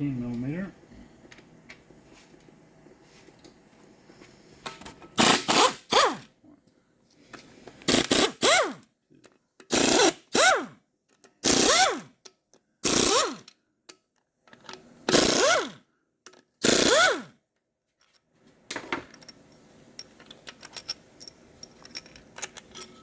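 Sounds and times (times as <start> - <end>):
power wrench whining: 5.2 - 6.3, 7.8 - 8.8, 9.6 - 10.7, 11.4 - 12.2, 12.8 - 13.5, 15.1 - 15.8, 16.6 - 17.3
metallic clinks of bolts: 19.0 - 23.0.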